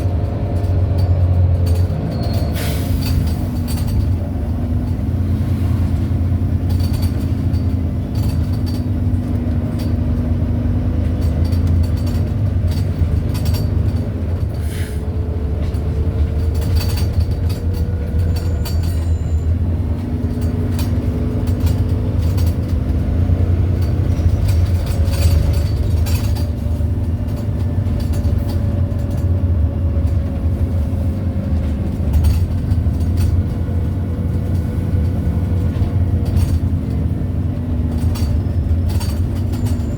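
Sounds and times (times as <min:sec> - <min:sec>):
bus engine rumble: 0:00.0 - 0:39.9
squeaks and rattles from bus body: 0:00.0 - 0:39.9.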